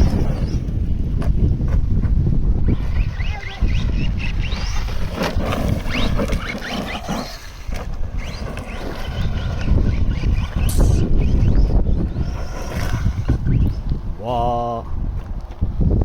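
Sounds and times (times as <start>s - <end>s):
wind rumble on microphone: 0.0s - 16.0s
electric motor whining in bursts: 2.7s - 14.2s.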